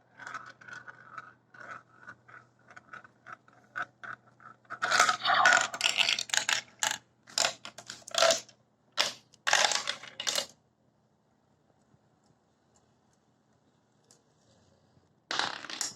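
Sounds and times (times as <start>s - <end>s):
marbles rattling down plastic track: 0.1s - 3.9s, 4.7s - 10.5s, 15.3s - 15.9s.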